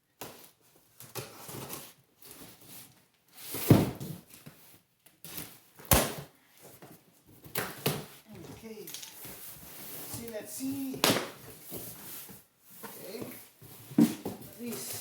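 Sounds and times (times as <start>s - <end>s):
packaging rustling and knocking: 6.8s - 15.0s.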